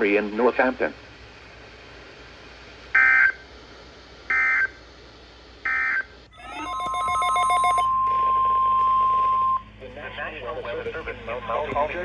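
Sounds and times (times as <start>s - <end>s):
harsh digital screeches: 6.4s - 8.0s
steady alert tone: 6.4s - 8.2s
buzzy multi-tone signal: 6.4s - 9.7s.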